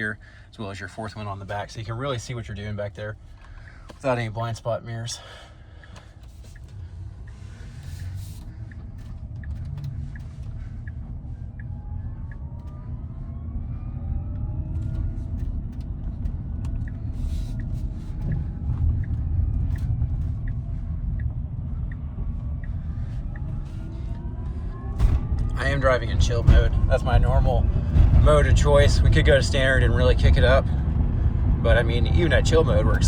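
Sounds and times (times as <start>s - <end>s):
road and tyre rumble: 0.0s - 33.0s
faint ticks: 5.8s - 12.8s
faint whine rising in pitch: 6.6s - 33.0s.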